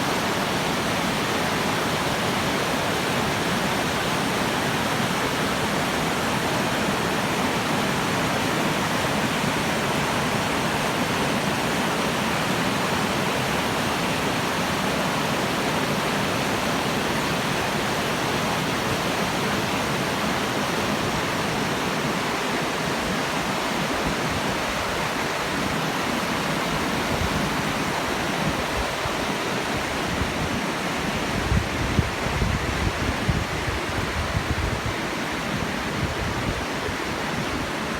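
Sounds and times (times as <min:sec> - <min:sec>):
stream water rushing: 0:00.0 - 0:37.9
wind buffeting microphone: 0:31.3 - 0:37.8.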